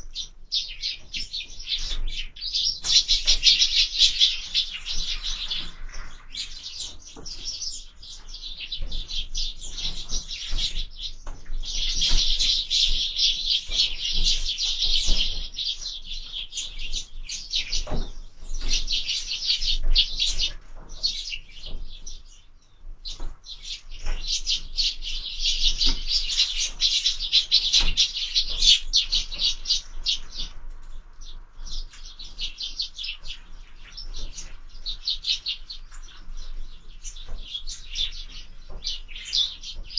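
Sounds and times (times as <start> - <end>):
sparrows chirping: 0.0 - 39.9.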